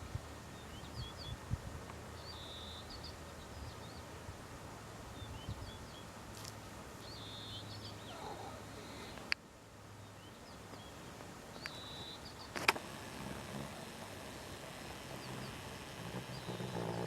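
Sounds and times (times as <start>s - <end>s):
small birds chirping: 0.5s - 1.5s, 2.1s - 4.1s, 5.1s - 9.4s, 10.0s - 17.0s
horse snoring: 12.8s - 17.0s.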